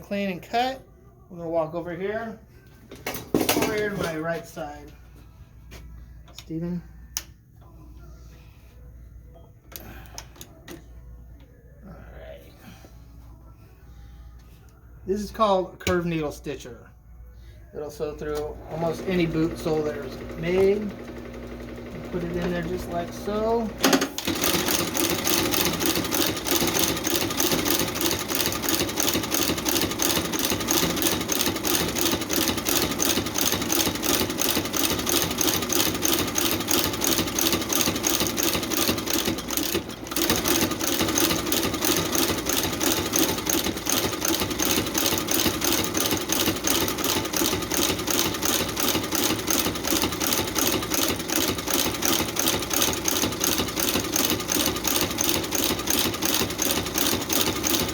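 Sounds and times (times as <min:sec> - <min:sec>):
sole stitching machine running: 0:18.4 - 0:57.9.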